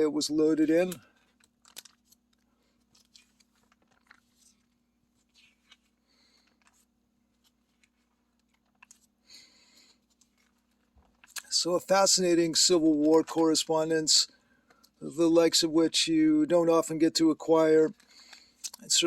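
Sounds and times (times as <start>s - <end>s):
low steady hum: 0.0s - 19.0s
soft clicks and rustles: 0.9s - 9.2s, 9.8s - 11.6s.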